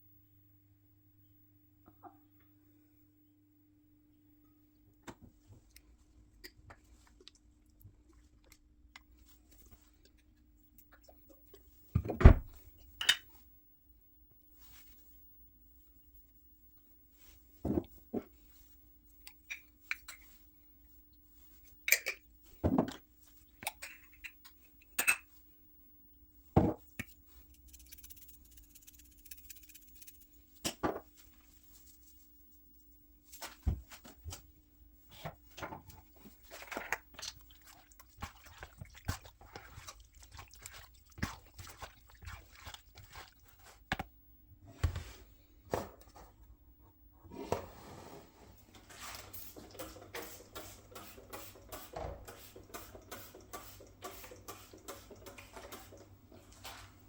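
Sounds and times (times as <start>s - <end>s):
faint steady hum: 0.0s - 49.9s.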